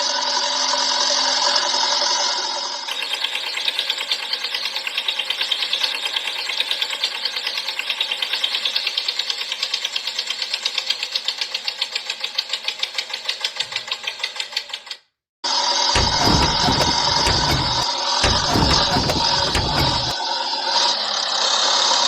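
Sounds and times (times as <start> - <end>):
toy tractor chugging rattle: 2.9 - 15.0.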